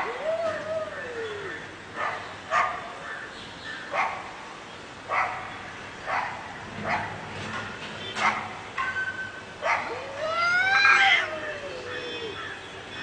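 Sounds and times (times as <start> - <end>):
dog barking: 2.0 - 2.8, 3.9 - 4.2, 5.1 - 5.5, 6.1 - 7.1, 8.2 - 8.5, 9.6 - 9.9.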